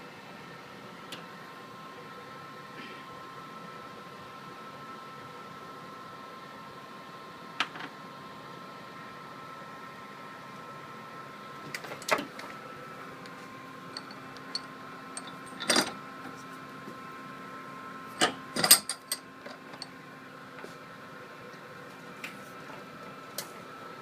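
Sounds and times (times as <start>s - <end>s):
background hum: 11.3s - 20.7s.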